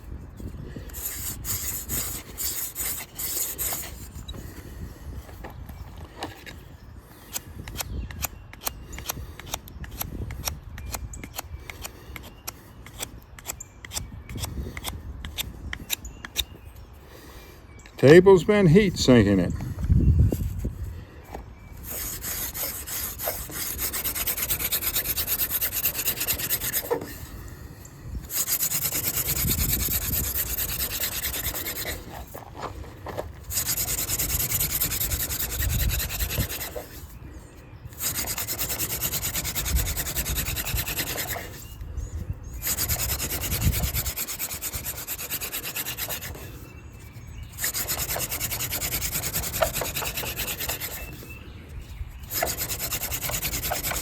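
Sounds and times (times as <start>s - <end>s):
hand drill spindle rasping: 0.9s - 4.4s, 21.8s - 27.2s, 28.2s - 37.1s, 37.9s - 41.7s, 42.6s - 46.6s, 47.5s - 51.4s, 52.2s - 54.0s.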